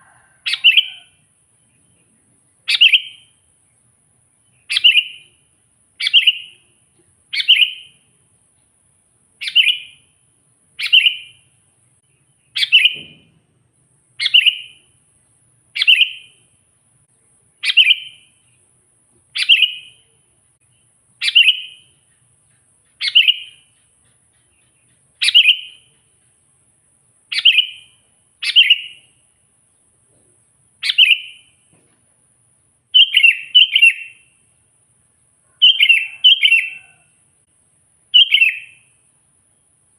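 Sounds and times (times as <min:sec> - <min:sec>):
bulbul calling sharp notes: 0:12.5 - 0:13.1, 0:21.2 - 0:26.0.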